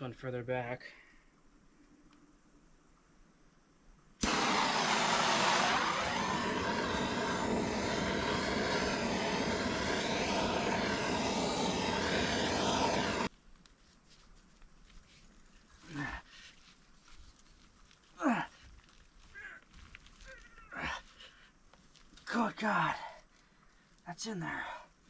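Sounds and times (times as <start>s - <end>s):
power saw cutting pipe: 4.2s - 13.3s.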